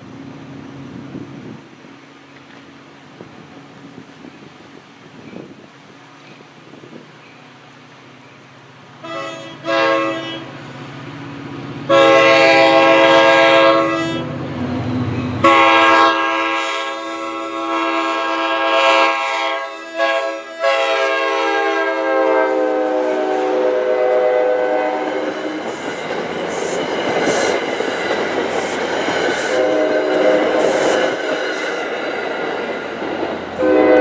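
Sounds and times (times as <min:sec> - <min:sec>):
train rumbling past: 0:00.0 - 0:34.0
train horn chord blasts: 0:09.0 - 0:10.6, 0:11.9 - 0:14.4, 0:15.4 - 0:25.8, 0:29.5 - 0:31.2, 0:33.6 - 0:34.0
wheels clicking over rail joints: 0:25.0 - 0:33.6.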